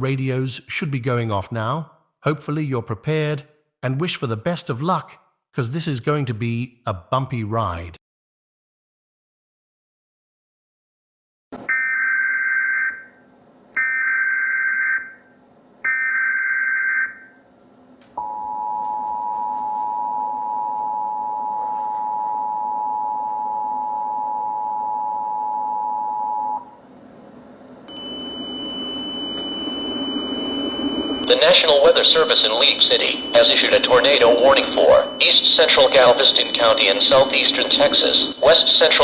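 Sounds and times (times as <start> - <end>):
hiss with high whines: 27.9 - 39.0
two-tone attention signal: 27.9 - 39.0
warbling data tone bursts: 27.9 - 39.0.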